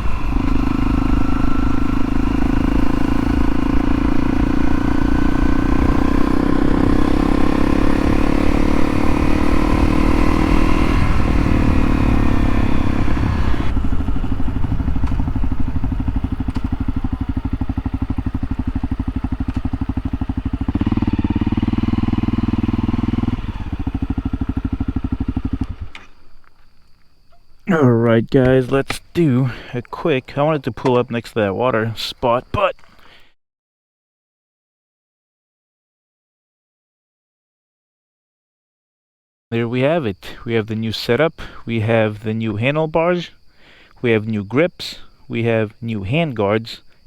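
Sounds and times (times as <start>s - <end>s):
motorcycle engine running: 0.0s - 26.2s.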